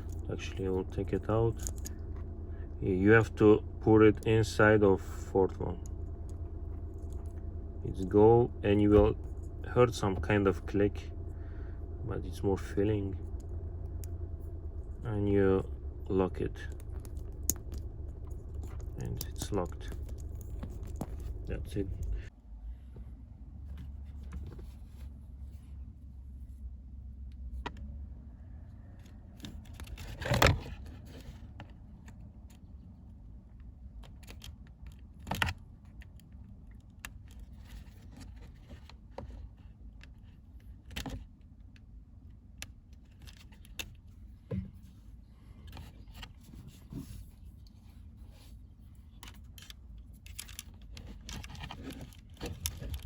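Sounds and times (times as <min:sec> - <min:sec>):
plastic parts clicking and rattling: 0:00.0 - 0:02.3, 0:15.8 - 0:22.3, 0:42.6 - 0:44.1, 0:49.1 - 0:53.0.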